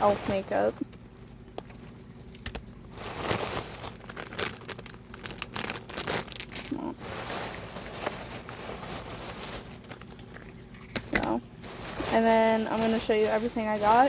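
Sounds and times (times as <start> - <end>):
packaging crinkling and rustling: 0.0 - 14.0.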